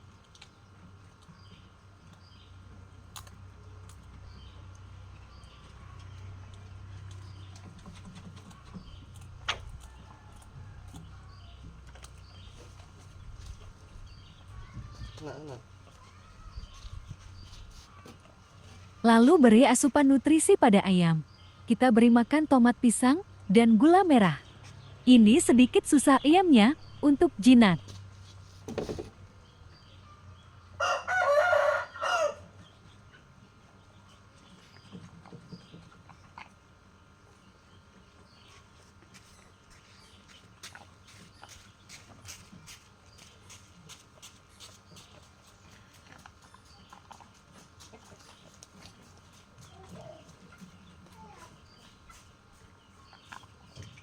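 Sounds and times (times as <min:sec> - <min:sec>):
steady low hum: 0:00.0 - 0:30.8
rooster crowing: 0:30.8 - 0:32.6.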